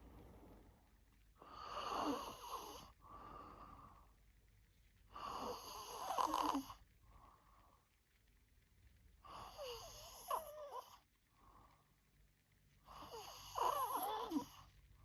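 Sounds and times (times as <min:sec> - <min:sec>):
woman snoring: 0:01.4 - 0:03.0, 0:05.2 - 0:06.8, 0:09.3 - 0:10.9, 0:12.9 - 0:14.6.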